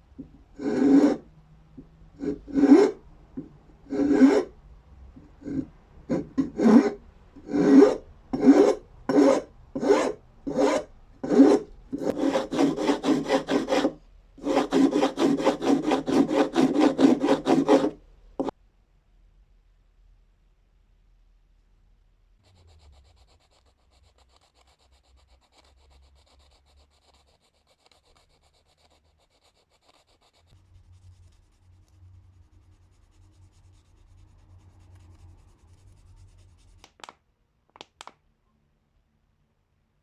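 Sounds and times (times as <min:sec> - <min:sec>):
hand sanding strokes: 0:07.6 - 0:18.5
smooth rubbing: 0:22.4 - 0:36.9.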